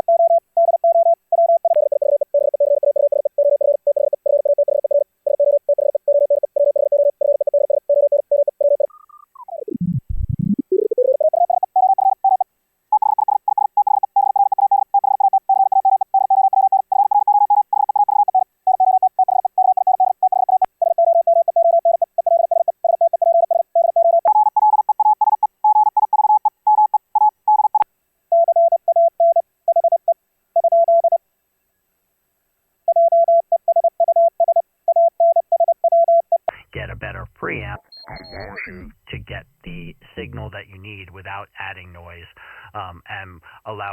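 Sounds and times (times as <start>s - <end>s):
morse code tones: 36.5s - 43.9s.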